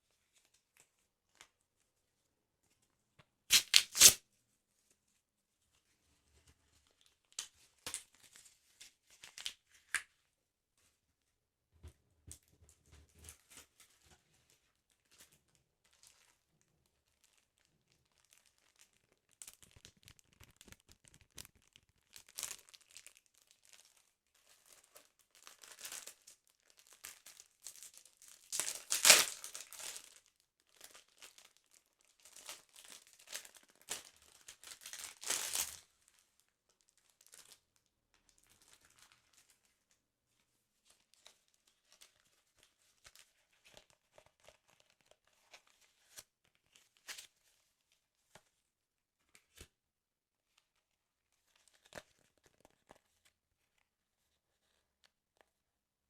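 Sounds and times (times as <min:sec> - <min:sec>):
paper tearing and crumpling: 0:03.5 - 0:04.2.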